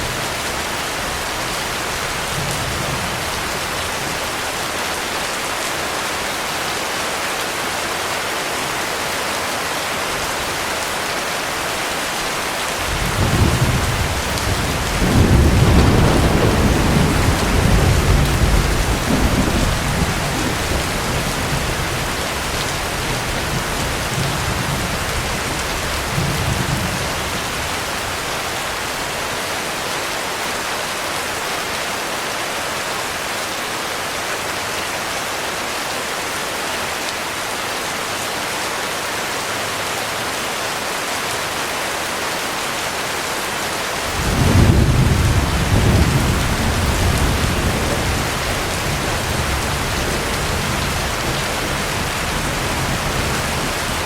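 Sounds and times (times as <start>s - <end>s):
heavy rain falling: 0.0s - 54.0s
thunder rumbling: 12.8s - 28.3s, 44.1s - 54.0s.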